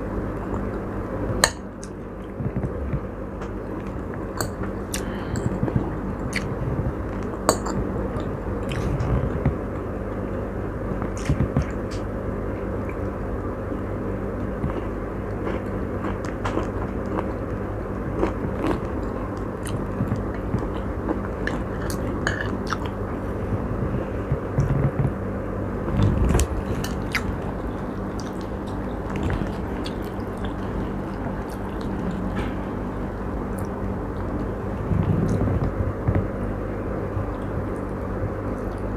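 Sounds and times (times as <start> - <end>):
low background hum: 0.0 - 38.9
person chewing food: 3.7 - 9.9, 14.4 - 25.1, 26.0 - 35.7.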